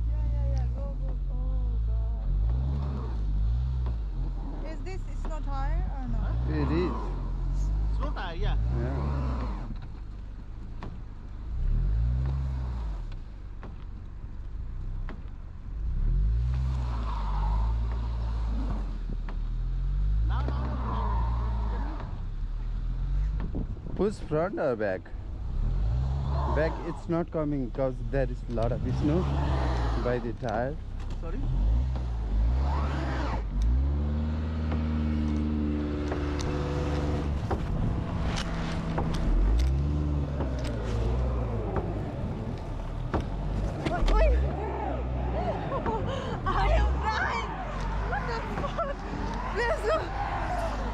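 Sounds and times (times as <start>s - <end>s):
car engine revving: 0.0s - 50.9s.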